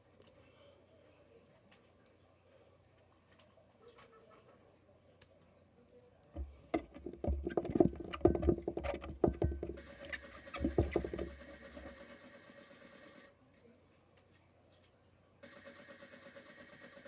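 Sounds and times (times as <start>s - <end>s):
soft dull knocks: 6.4s - 11.9s.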